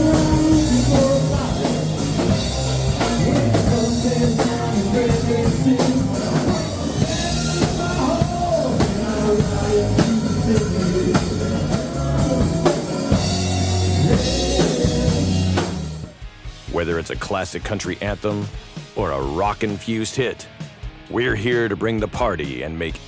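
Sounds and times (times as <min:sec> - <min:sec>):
person singing: 0:00.0 - 0:16.1
country-rock band music: 0:00.0 - 0:23.0.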